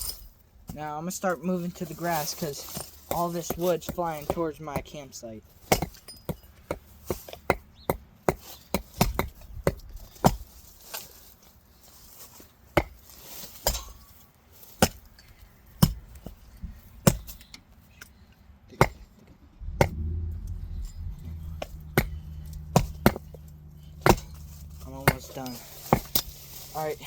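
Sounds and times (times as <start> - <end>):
axe chopping logs: 2.7 - 5.0, 5.6 - 10.5, 12.8 - 14.1, 14.7 - 17.4, 18.8 - 19.1, 21.3 - 26.4
low steady hum: 19.5 - 27.0.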